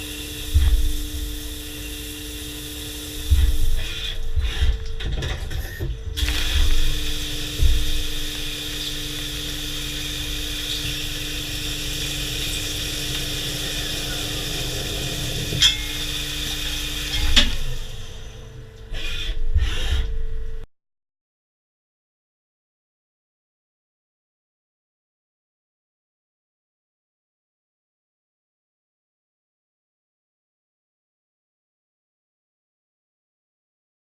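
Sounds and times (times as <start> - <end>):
machine tool motor hum: 0.0 - 20.6.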